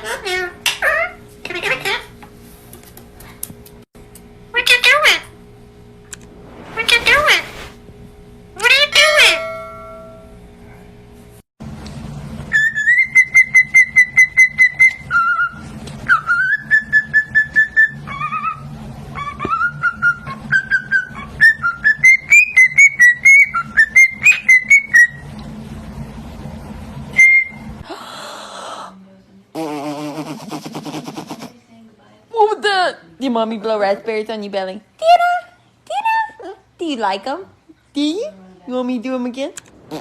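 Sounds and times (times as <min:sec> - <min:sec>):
low steady hum: 0:00.0 - 0:29.5
parrot whistling: 0:12.5 - 0:25.2.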